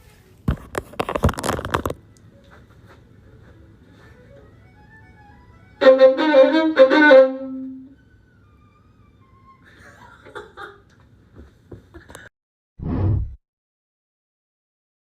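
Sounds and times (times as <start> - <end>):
violin playing bowed notes: 4.1 - 9.6.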